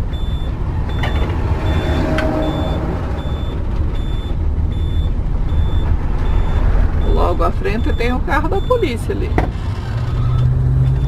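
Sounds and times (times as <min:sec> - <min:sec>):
diesel engine idling: 0:00.0 - 0:09.9
short high-pitched beeps: 0:00.1 - 0:07.2.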